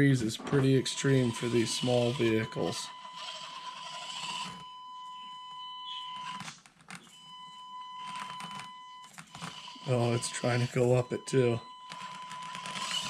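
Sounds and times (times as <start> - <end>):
electric motor whining: 1.2 - 4.6, 12.4 - 13.0.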